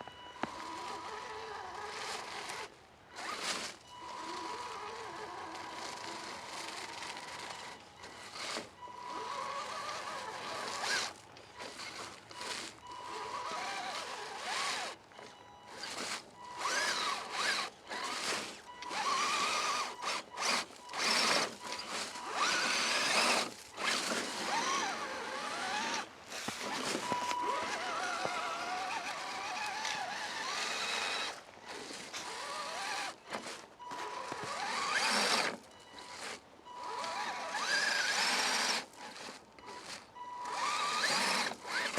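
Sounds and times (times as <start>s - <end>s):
electric motor whining: 0.0s - 41.9s.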